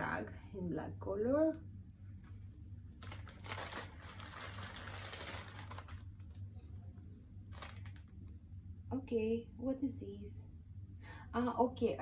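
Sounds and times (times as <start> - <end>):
packaging rustling and crinkling: 3.0 - 6.4, 7.4 - 8.3.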